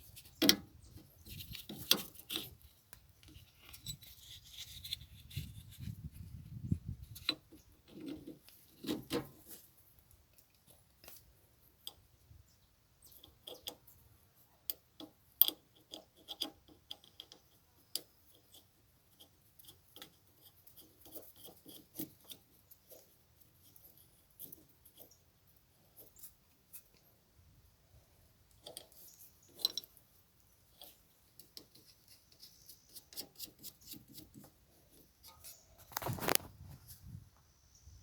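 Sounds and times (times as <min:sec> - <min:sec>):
wrench clicks and scrapes on metal: 0:00.0 - 0:06.2, 0:07.0 - 0:09.6, 0:13.1 - 0:14.0, 0:14.6 - 0:27.0, 0:28.5 - 0:36.4.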